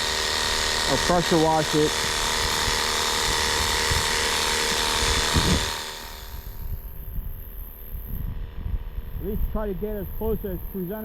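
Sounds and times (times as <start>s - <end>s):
pressure washer spraying water: 0.0s - 6.4s.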